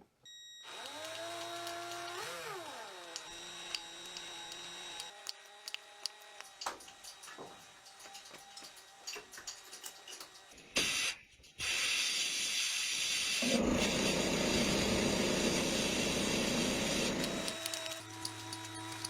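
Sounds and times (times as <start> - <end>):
small motor humming: 0.6 - 11.1, 12.9 - 19.0
spray hissing: 13.4 - 17.5.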